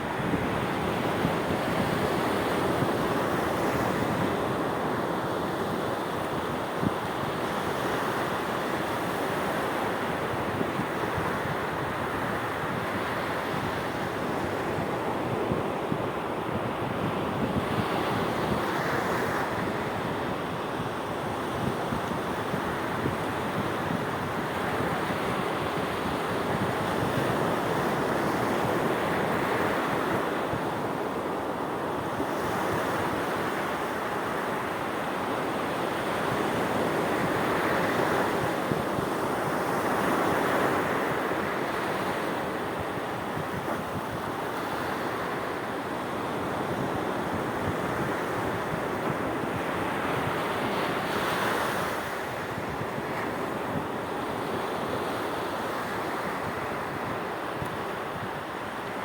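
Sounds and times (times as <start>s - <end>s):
wind noise on microphone: 0.0s - 59.0s.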